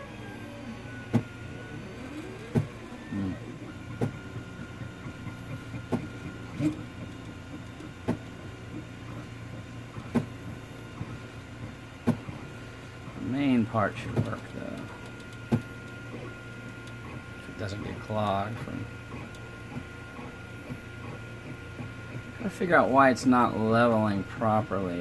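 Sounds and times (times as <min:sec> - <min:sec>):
stepper motors whining: 0:00.0 - 0:25.0.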